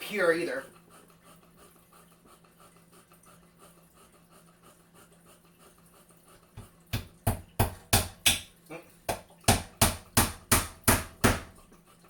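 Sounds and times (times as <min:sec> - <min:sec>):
hammer knocking on wood: 0:06.6 - 0:08.5, 0:09.1 - 0:11.6.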